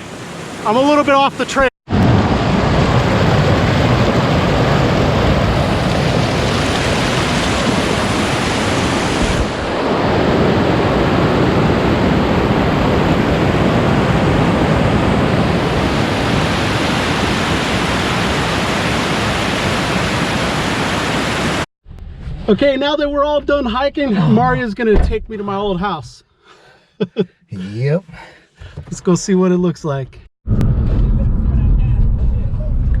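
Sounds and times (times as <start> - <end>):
waterfall rushing: 0.0 - 1.7, 2.5 - 11.3, 13.4 - 21.7.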